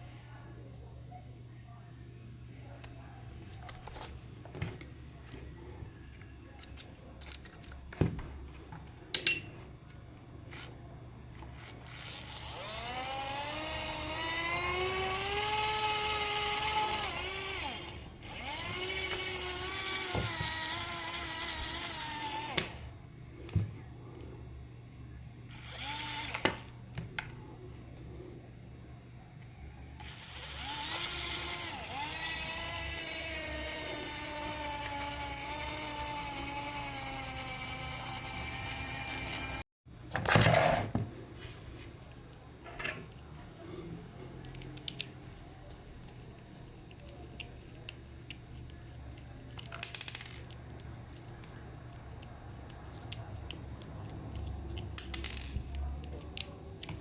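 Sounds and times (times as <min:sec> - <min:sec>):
small electric motor whining: 0:11.6 - 0:23.0, 0:25.5 - 0:26.8, 0:30.0 - 0:39.6.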